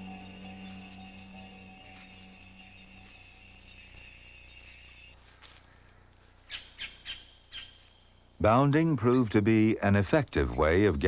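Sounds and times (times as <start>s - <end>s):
soft background music note: 0.0s - 4.2s
insects chirring: 0.0s - 11.0s.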